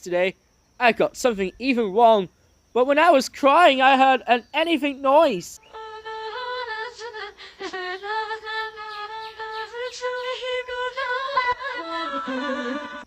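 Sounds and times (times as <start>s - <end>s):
high voice singing: 5.3s - 13.0s.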